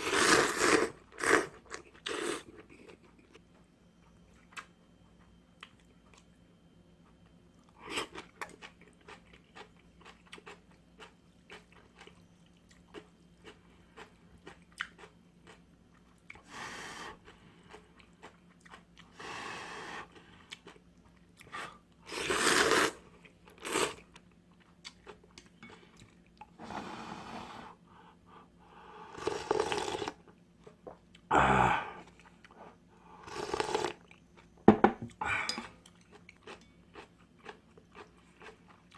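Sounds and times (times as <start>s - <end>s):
slurping and chewing noodles: 0.0s - 3.4s, 16.3s - 27.7s, 29.0s - 30.2s, 32.0s - 34.2s, 35.6s - 38.9s.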